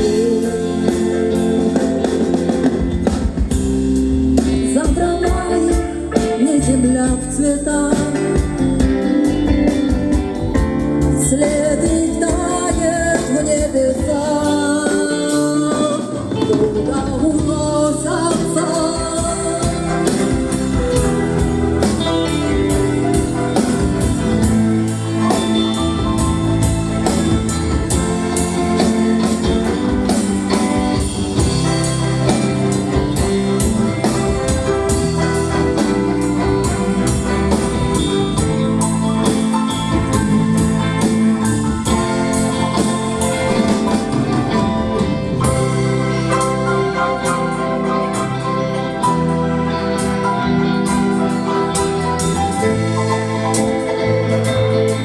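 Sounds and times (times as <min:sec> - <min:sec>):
bass: 0:00.0 - 0:55.0
drums: 0:00.0 - 0:55.0
guitar: 0:00.0 - 0:55.0
keyboards: 0:00.0 - 0:55.0.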